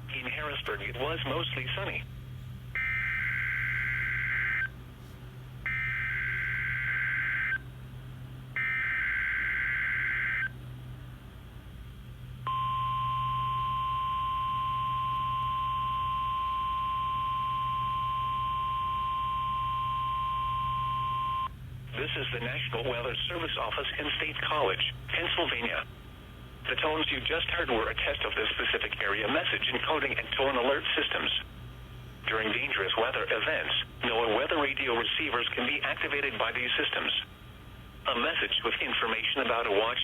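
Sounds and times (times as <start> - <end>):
steady warning alarm tone: 2.7 - 4.8, 5.6 - 7.7, 8.5 - 10.6, 12.4 - 25.9.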